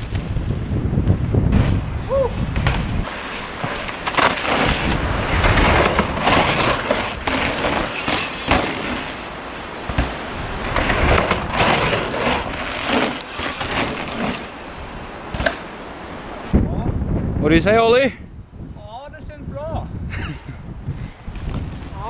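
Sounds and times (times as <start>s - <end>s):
bike knocks and rattles: 0.0s - 15.8s
bike tyres rushing over dirt: 0.0s - 16.7s, 20.8s - 22.0s.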